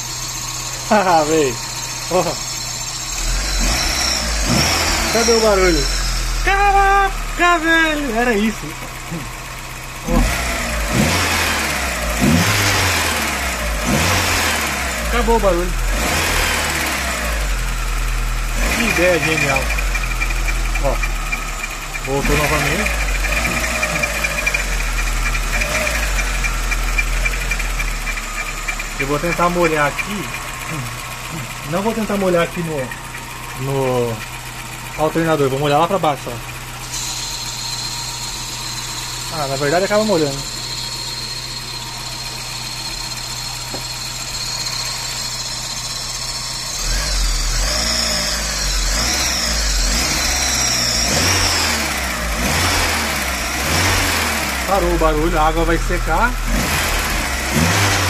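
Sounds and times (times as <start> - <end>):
pulsing belt squeak: 0.0 - 8.6, 18.6 - 58.0
car engine idling: 0.0 - 58.0
wavering high-pitched tone: 36.8 - 48.9.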